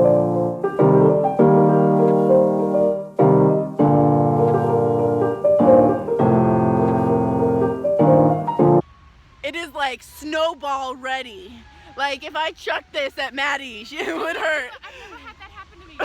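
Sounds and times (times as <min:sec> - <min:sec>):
piano chords: 0:00.0 - 0:08.8.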